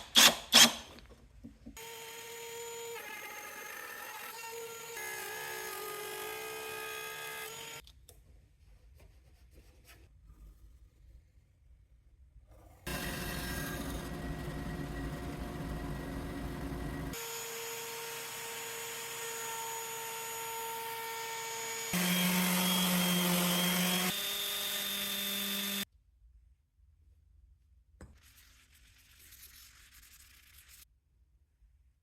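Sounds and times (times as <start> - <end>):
wood cutting noise: 1.8 - 7.8, 12.9 - 25.9
power tool motor whine: 12.9 - 20.2, 21.2 - 25.8.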